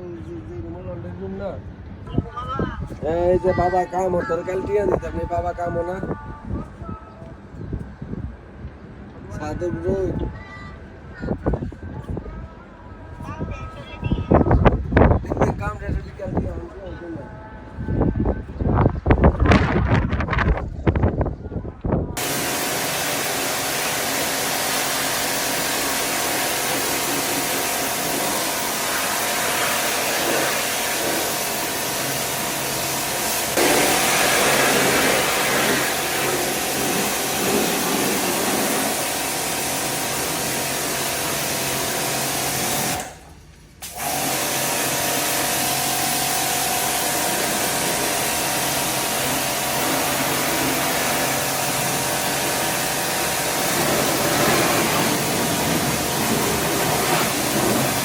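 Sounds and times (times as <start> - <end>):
fan air noise: 0.0 - 58.0
electric motor whirring: 22.2 - 43.2.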